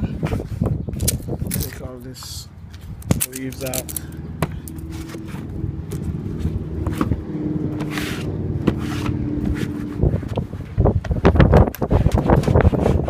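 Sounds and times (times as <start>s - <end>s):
low engine hum: 2.3s - 11.8s.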